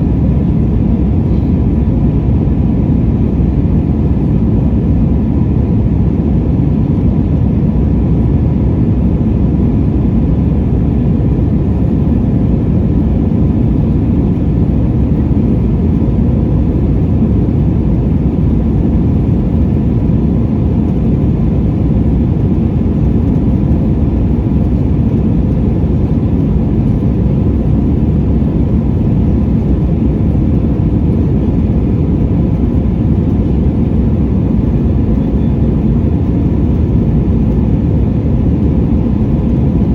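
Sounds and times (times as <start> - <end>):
jet engine rumble in cabin: 0.0 - 39.9.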